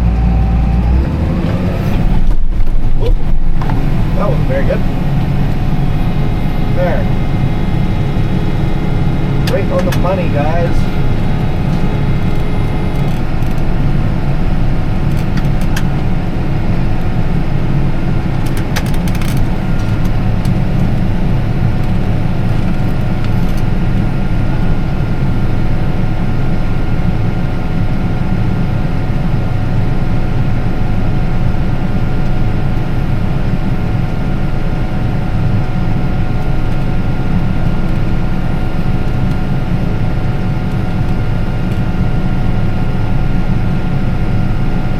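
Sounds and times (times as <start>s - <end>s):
faint auger whine: 0.0s - 25.5s
tractor engine drone: 0.0s - 44.9s.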